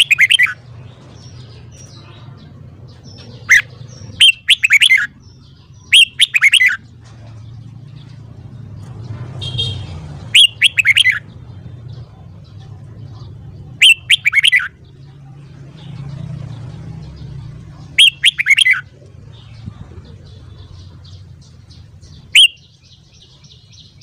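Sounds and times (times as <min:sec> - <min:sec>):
bird singing whistled phrases: 0:00.0 - 0:00.6, 0:03.4 - 0:05.1, 0:05.8 - 0:06.8, 0:10.3 - 0:11.2, 0:13.8 - 0:14.7, 0:18.0 - 0:18.9, 0:22.3 - 0:22.8.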